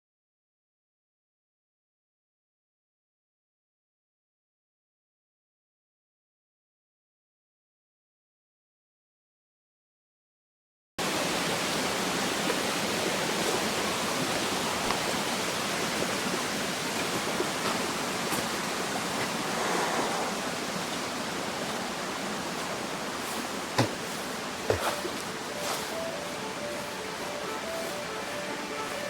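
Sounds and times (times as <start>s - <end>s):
waterfall rushing: 11.0s - 29.0s.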